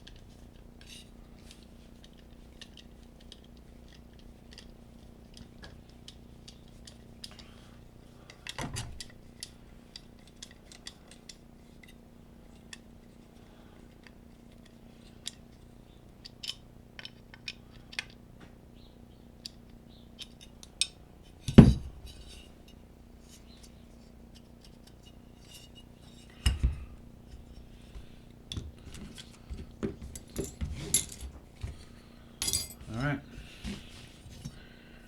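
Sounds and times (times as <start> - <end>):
metal tools clicking and clinking: 30.1 - 31.3, 32.4 - 33.1.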